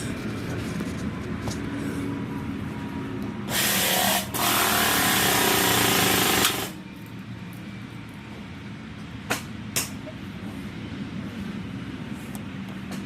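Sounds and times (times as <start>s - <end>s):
low mechanical rumble: 0.0s - 13.0s
power tool hissing whir: 3.5s - 6.8s.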